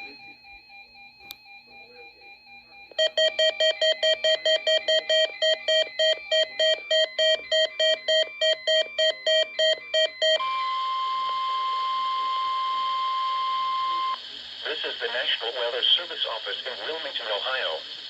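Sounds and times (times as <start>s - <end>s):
steady warning alarm tone: 0.0s - 14.2s
rapid electronic alert beeps: 1.7s - 10.6s
radio static hiss: 13.4s - 18.0s.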